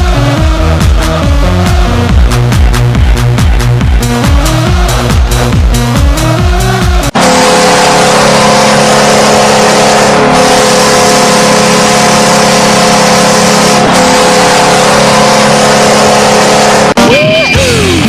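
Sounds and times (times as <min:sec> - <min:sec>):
goal horn blast: 0:07.1 - 0:17.1.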